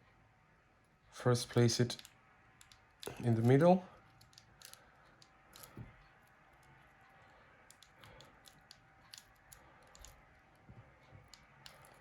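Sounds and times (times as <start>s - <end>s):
small plastic parts clicking: 1.9s - 6.9s, 7.6s - 12.0s.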